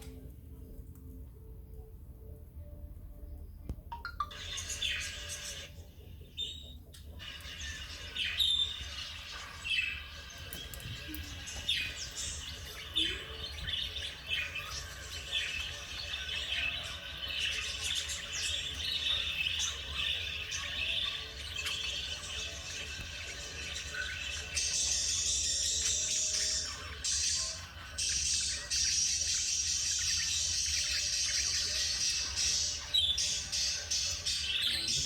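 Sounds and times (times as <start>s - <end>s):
budgerigars chirping and chattering: 4.1s - 35.0s.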